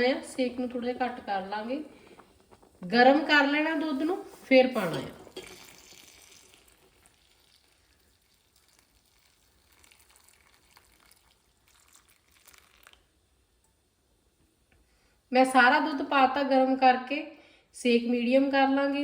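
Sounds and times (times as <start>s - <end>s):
milk sizzling and crackling in a pot: 0.0s - 14.7s.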